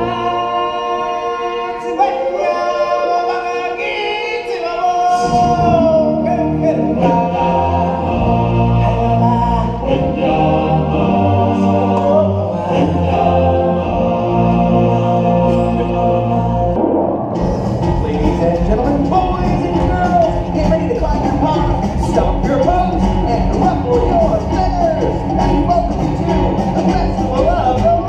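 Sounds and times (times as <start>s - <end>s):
choir singing in harmony: 0.0s - 28.0s
deep bass and beat: 16.8s - 28.0s.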